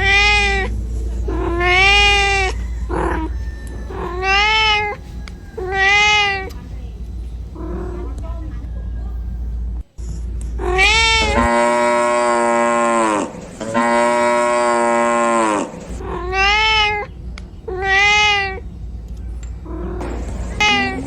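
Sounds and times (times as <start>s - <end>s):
cat meowing loudly: 0.0s - 0.7s, 1.3s - 5.0s, 5.6s - 6.5s, 10.6s - 11.9s, 14.0s - 17.1s, 17.7s - 18.6s, 20.6s - 21.0s.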